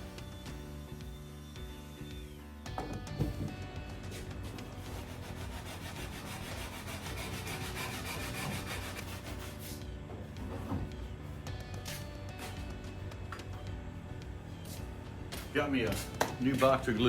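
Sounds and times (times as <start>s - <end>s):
sanding wood by hand: 4.0s - 9.9s.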